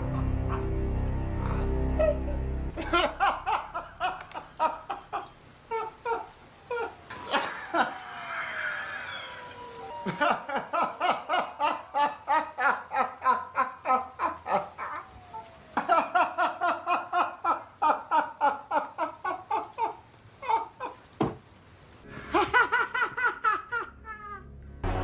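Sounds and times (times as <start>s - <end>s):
hearty laughter: 2.0s - 6.2s, 6.8s - 8.8s, 10.0s - 15.1s, 15.8s - 21.0s, 22.1s - 24.4s.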